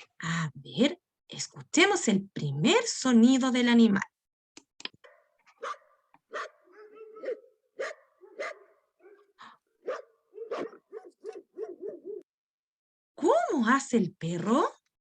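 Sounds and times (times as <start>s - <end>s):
dog barking: 5.0s - 12.2s.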